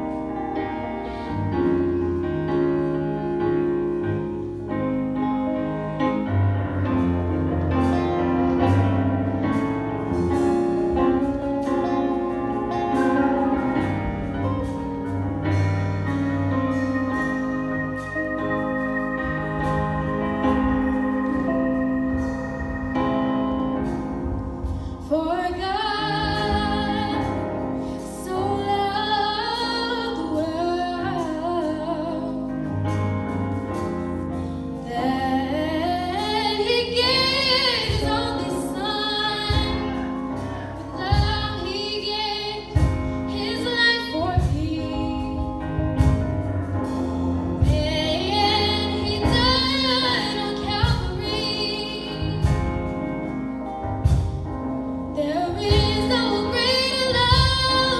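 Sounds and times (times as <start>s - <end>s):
sustained keyboard accompaniment: 0.0s - 57.9s
woman singing gospel: 24.9s - 32.5s, 34.8s - 46.2s, 47.6s - 53.1s, 55.2s - 57.9s.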